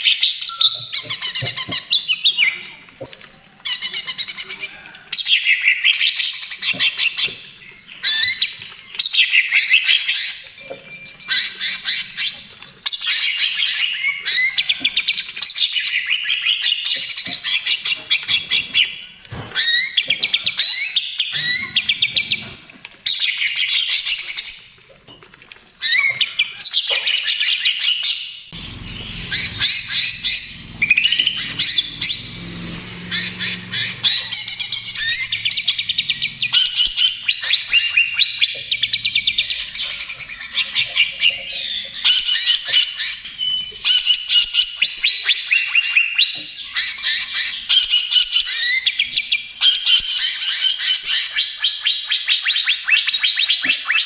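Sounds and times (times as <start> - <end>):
faint low hum: 28.6 - 41.2
bird singing chattering song: 28.6 - 48.4.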